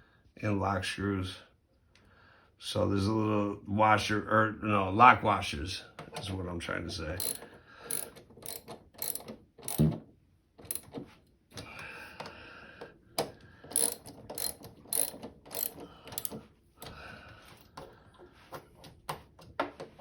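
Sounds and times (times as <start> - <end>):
ratchet clicking: 7.2 - 9.9, 10.6 - 10.9, 13.7 - 16.4.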